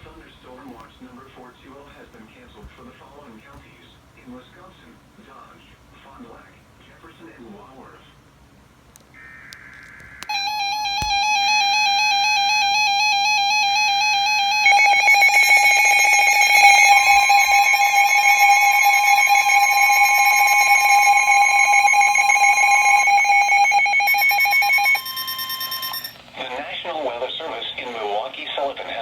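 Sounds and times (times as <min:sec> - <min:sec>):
steady electronic tones: 0:10.3 - 0:26.2
warbling electronic alarm tone: 0:10.3 - 0:26.2.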